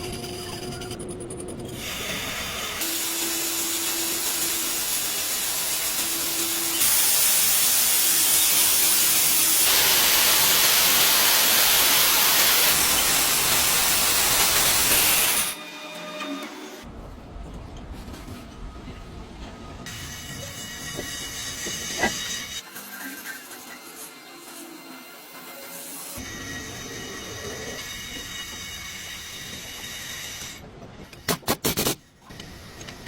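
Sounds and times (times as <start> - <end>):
hissing spray: 1.8 - 15.6.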